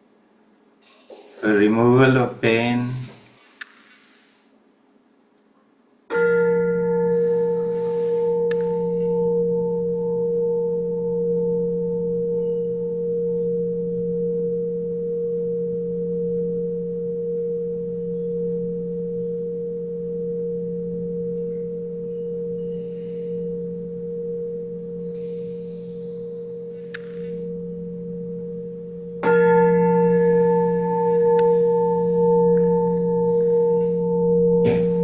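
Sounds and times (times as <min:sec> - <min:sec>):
faint hissing: 0:00.8 - 0:04.6
tuned metal pipe ringing: 0:06.1 - 0:35.0.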